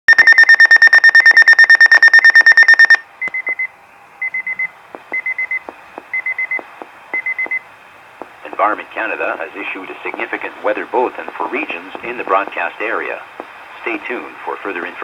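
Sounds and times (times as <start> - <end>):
rapid high-pitched alarm beeping: 0.1 - 3.0
short high beeps: 0.1 - 5.6.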